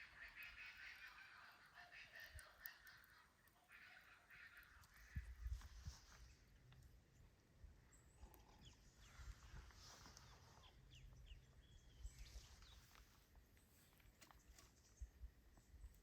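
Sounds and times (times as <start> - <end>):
faint bird chirps: 7.1 - 13.2.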